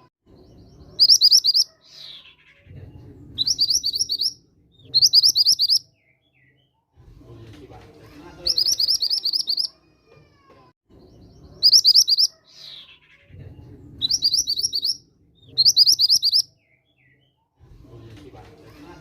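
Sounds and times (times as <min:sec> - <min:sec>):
bird rapid high chirping: 0:00.0 - 0:06.6, 0:08.4 - 0:09.8, 0:11.0 - 0:13.3, 0:14.0 - 0:17.2.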